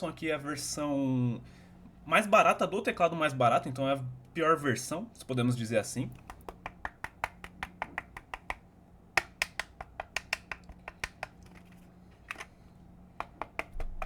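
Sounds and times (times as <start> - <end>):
fingers tapping on plastic case: 6.1 - 8.6, 9.2 - 11.7, 13.2 - 14.0.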